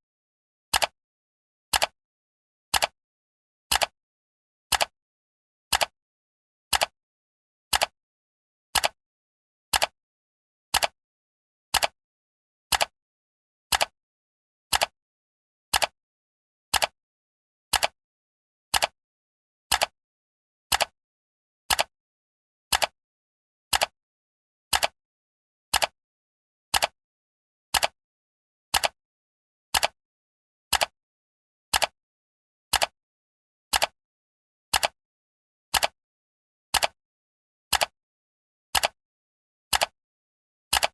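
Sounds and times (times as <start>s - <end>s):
timer ticking: 14.7s - 14.9s, 36.8s - 37.0s.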